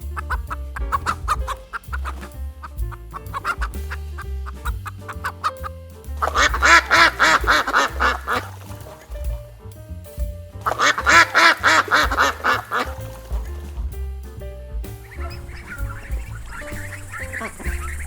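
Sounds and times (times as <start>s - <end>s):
background music: 0.0s - 18.0s
waterfowl rapid repeated calls: 3.4s - 4.0s, 6.2s - 8.7s, 10.7s - 13.4s, 15.0s - 18.0s.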